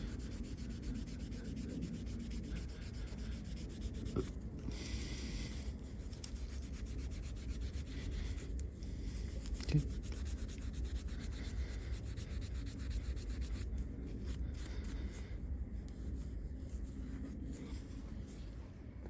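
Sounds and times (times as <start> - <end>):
abrasive pad scrubbing metal: 0.0 - 4.3, 5.4 - 8.5.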